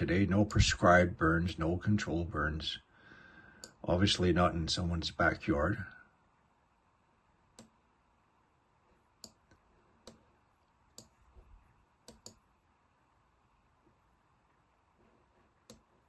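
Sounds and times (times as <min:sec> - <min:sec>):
computer mouse clicks: 0:07.5 - 0:07.8, 0:09.2 - 0:11.2, 0:12.0 - 0:12.4, 0:15.6 - 0:16.0.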